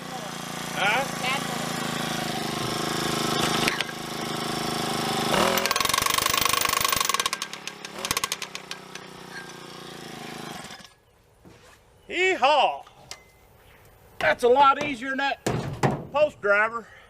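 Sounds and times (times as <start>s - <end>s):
powered hammer motor running: 0.0s - 11.0s.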